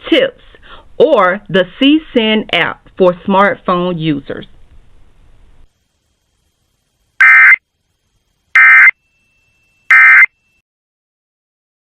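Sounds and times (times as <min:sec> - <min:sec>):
buzzing digital data tones: 0:07.2 - 0:07.6, 0:08.6 - 0:10.6.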